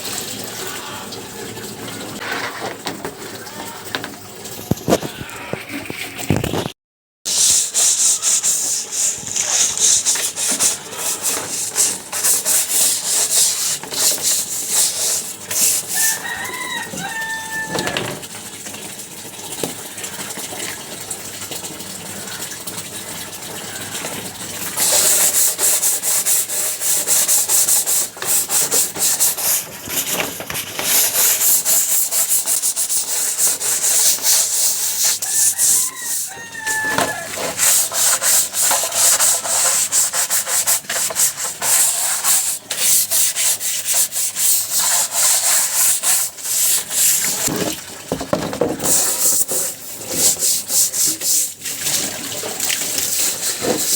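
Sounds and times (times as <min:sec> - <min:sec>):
scraping cage tray: 0:02.2 - 0:03.9
chicken calling: 0:15.9 - 0:18.1, 0:35.2 - 0:37.6.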